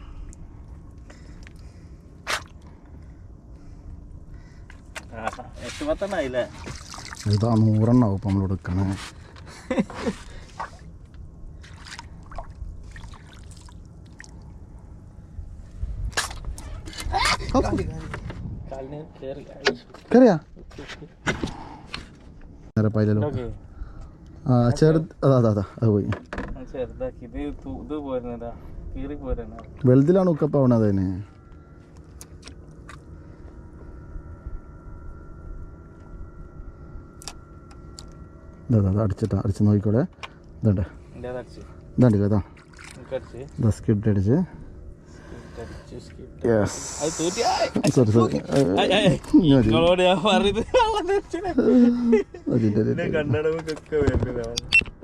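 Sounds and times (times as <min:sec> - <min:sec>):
low steady rumble: 0:00.0 - 0:55.0
thin steady whine: 0:00.0 - 0:55.0
water trickling and splashing: 0:06.4 - 0:07.9, 0:11.6 - 0:14.5, 0:42.4 - 0:43.6
boat engine humming: 0:09.1 - 0:17.2, 0:27.0 - 0:53.9.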